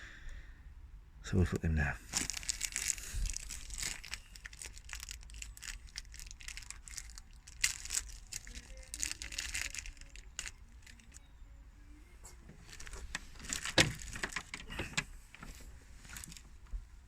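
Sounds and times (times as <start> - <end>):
plastic packaging crinkling: 2.0 - 11.2, 12.6 - 16.6.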